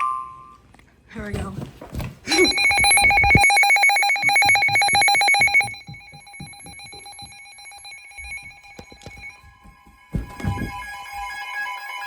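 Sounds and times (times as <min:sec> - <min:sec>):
fast-pulsing electronic alert tone: 0:02.3 - 0:05.9.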